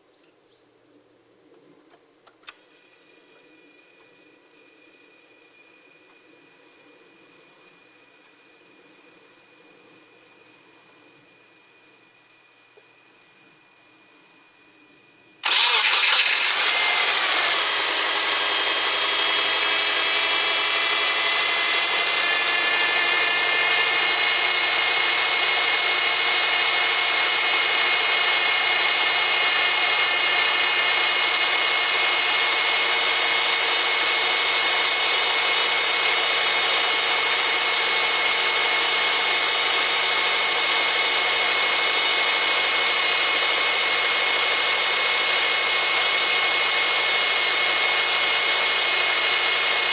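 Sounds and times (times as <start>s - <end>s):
car engine running with whirring hum: 15.4s - 49.9s.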